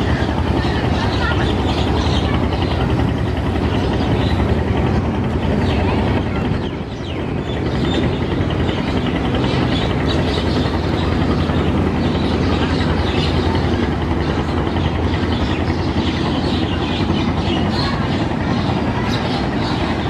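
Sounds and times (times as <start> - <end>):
boat engines rumbling: 0.0 - 20.0.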